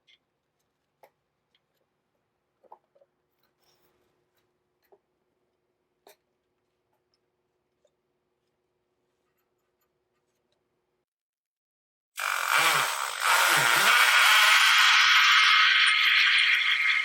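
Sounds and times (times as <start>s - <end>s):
power drill boring holes: 12.2s - 17.0s.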